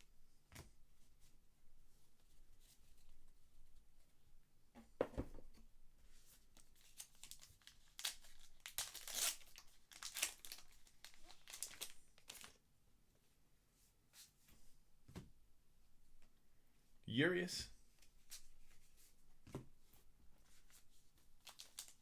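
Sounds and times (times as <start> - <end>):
thump: 4.8 - 5.4
wrapper tearing and crinkling: 6.8 - 12.6, 21.4 - 22.0.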